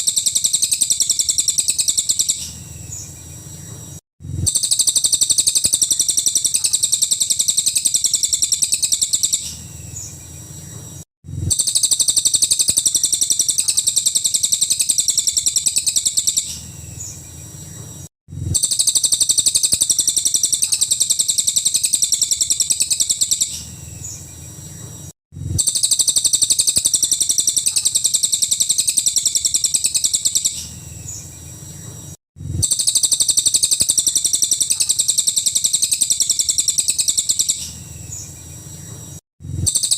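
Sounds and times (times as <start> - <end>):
bird singing a high trill: 4.4 - 10.8, 32.6 - 39.9.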